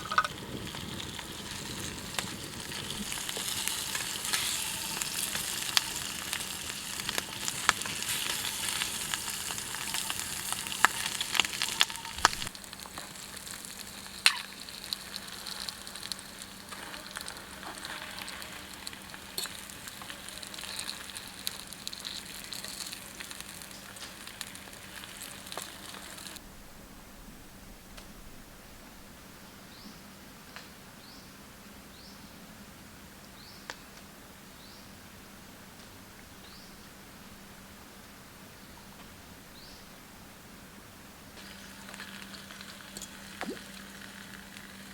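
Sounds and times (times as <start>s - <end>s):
food sizzling: 0.0s - 29.5s, 41.3s - 44.9s.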